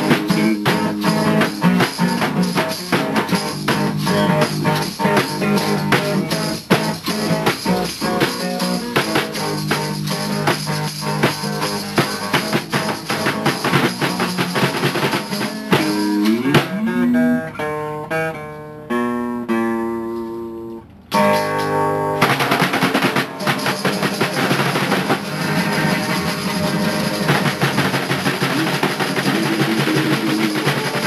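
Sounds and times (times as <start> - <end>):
held guitar notes ringing: 0.0 - 13.4, 15.2 - 22.2
drums: 0.0 - 17.6, 21.1 - 31.0
strummed electric guitar: 0.0 - 31.0.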